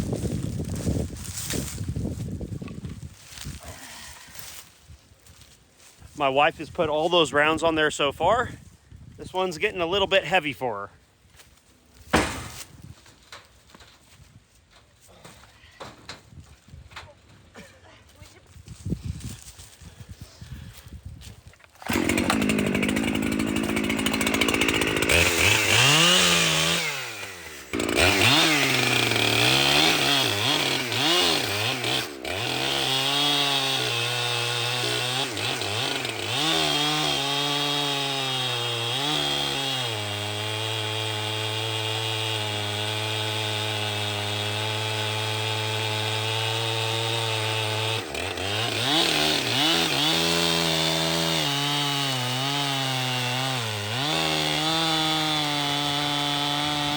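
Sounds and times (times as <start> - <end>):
chainsaw cutting log: 12.1 - 12.7, 21.7 - 56.9.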